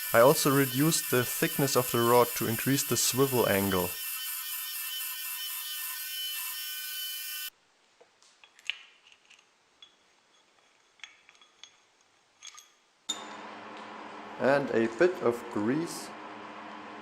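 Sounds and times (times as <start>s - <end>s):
power tool motor whining: 0.0s - 7.5s
small metal parts clicking: 8.4s - 12.9s.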